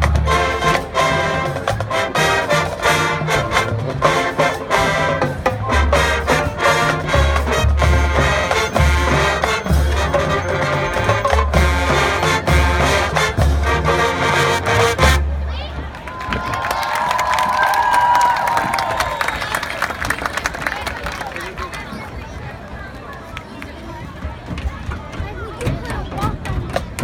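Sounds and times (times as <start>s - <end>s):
held low brass notes: 0.0s - 15.6s
marching band playing: 0.0s - 17.6s
drumline hits: 0.0s - 19.2s.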